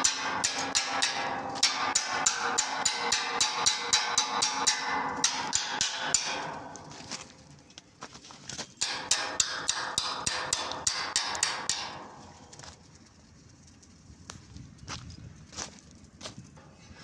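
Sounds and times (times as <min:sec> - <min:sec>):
hammer striking metal: 0:00.0 - 0:07.1, 0:08.8 - 0:12.2.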